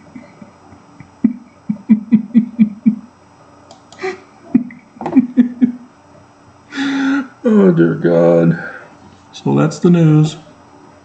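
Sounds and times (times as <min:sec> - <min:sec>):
man laughing: 0:00.0 - 0:03.1, 0:04.0 - 0:05.9.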